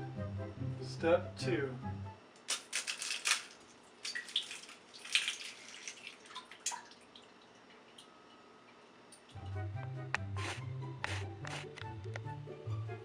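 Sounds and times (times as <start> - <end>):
wet splashy sounds: 4.0 - 7.4.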